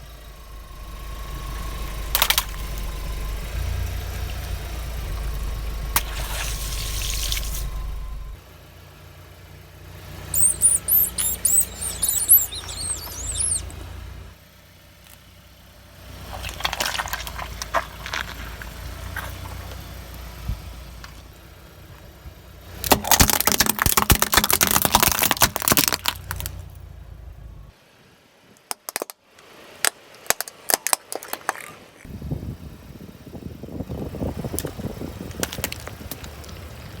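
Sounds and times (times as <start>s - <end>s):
low engine rumble: 0.0s - 22.9s, 25.6s - 27.8s, 32.1s - 37.0s
sharp snaps and clicks: 10.4s - 13.7s, 28.6s - 29.2s, 29.8s - 31.8s
tyres crushing objects: 22.9s - 26.6s.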